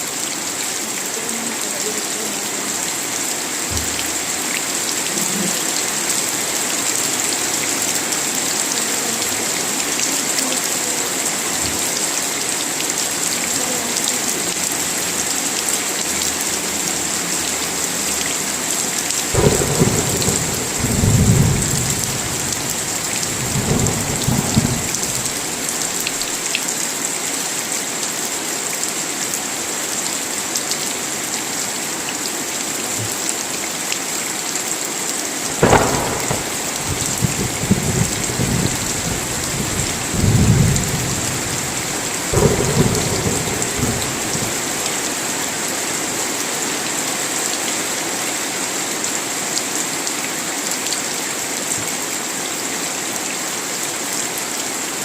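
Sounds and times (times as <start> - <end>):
heavy rain: 0.0 - 55.0
thunderclap: 19.4 - 26.3, 35.6 - 44.9
rolling thunder rumbles: 19.4 - 26.4, 35.6 - 45.0.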